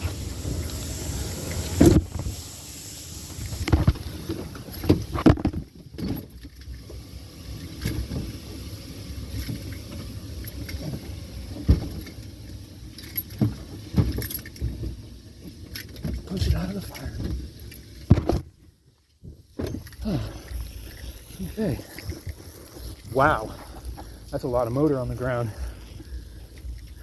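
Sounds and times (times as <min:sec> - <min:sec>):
car fire rushing noise: 0:00.0 - 0:05.4
knocks and pops: 0:03.6 - 0:05.7, 0:18.1 - 0:18.5.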